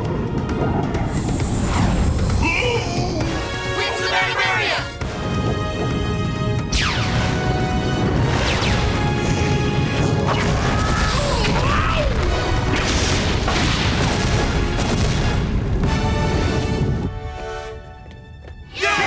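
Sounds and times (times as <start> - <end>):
background music: 0.0 - 19.0
explosions and crashes: 6.7 - 17.1.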